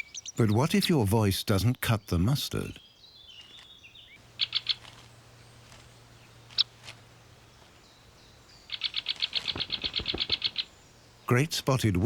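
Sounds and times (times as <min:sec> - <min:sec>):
sharp high bird calls: 0:02.8 - 0:05.1, 0:05.8 - 0:06.8, 0:07.6 - 0:11.3.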